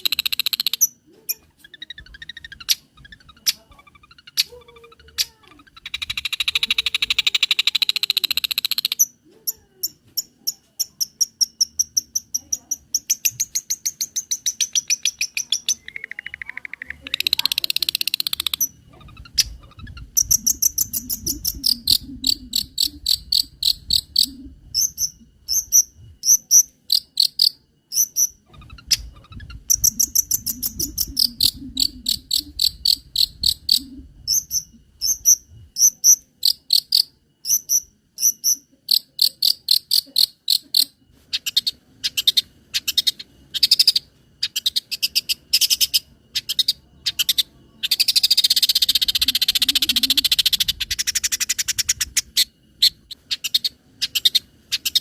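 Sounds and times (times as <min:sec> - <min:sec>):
bird singing chips and trills: 0:09.9 - 0:55.0.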